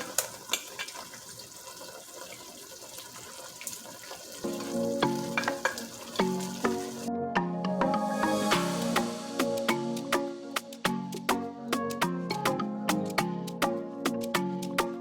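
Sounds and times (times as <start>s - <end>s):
meat sizzling in a pot: 0.0s - 7.1s
background music: 4.4s - 15.0s.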